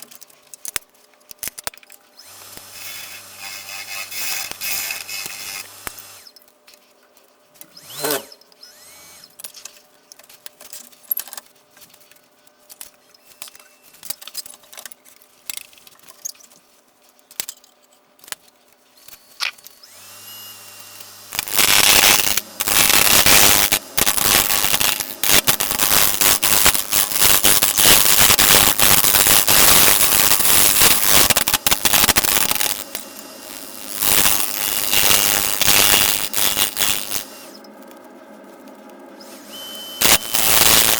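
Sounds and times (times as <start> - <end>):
rough grinding on wood lathe: 2.2 - 6.3, 7.8 - 8.9, 19.9 - 37.6.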